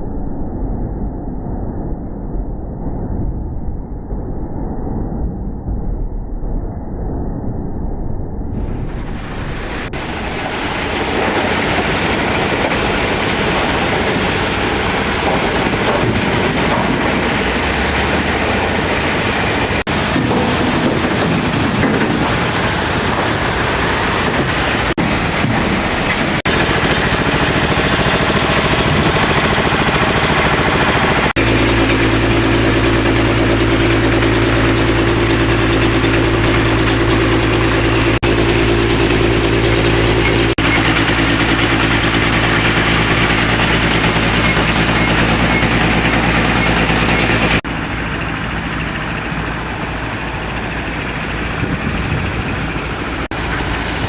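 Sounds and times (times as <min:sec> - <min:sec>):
processing machinery running: 0:08.6 - 0:54.0.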